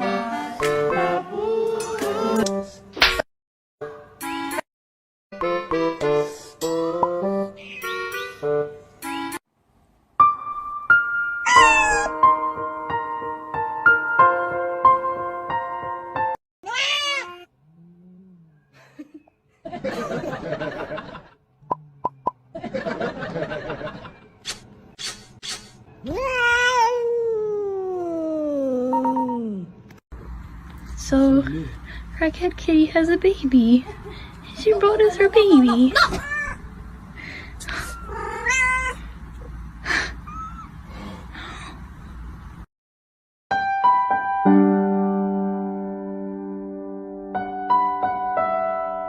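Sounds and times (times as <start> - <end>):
cat meow: 11.4 - 12.1, 16.6 - 17.5, 36.0 - 36.6, 37.9 - 39.0
person laughing: 18.8 - 21.2.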